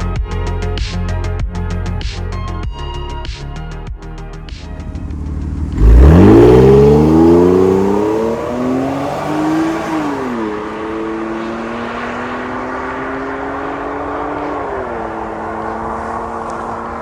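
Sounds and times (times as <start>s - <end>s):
car engine revving and idling: 4.6s - 17.0s.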